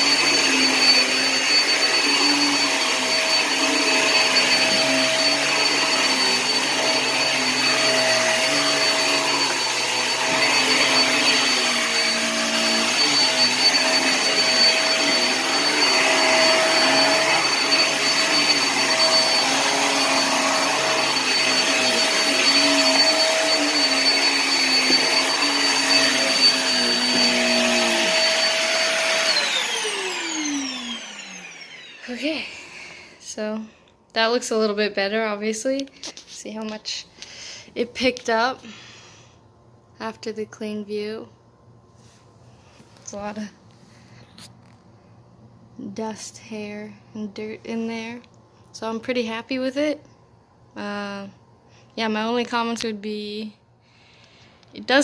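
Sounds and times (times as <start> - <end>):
vacuum motor spinning down: 0.0 - 33.2
vacuum cleaner running: 0.0 - 36.3.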